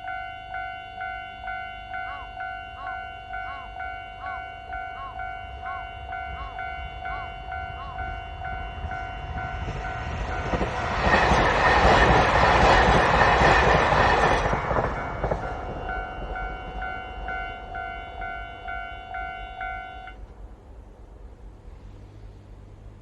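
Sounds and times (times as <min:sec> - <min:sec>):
level crossing warning bell: 0:00.0 - 0:10.7, 0:14.8 - 0:20.2
diesel train passing: 0:00.0 - 0:23.0.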